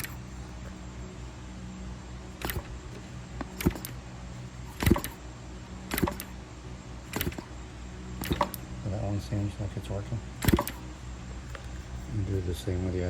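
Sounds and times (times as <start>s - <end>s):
steady low hum: 0.0s - 13.0s
engine turned over by hand: 2.4s - 4.0s, 4.6s - 5.2s, 5.9s - 6.4s, 7.0s - 7.6s, 8.2s - 8.7s, 10.4s - 10.9s.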